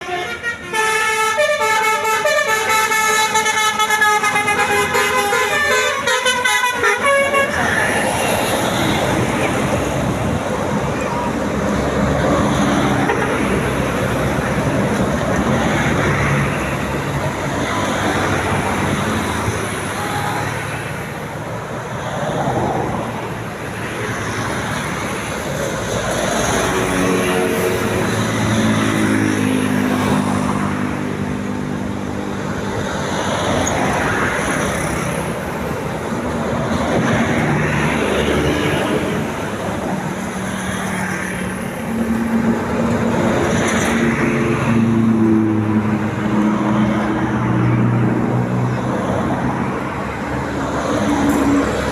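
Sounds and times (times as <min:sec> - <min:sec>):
multi-note bus horn: 0:00.0 - 0:07.6, 0:12.9 - 0:13.5
road traffic: 0:00.0 - 0:51.9.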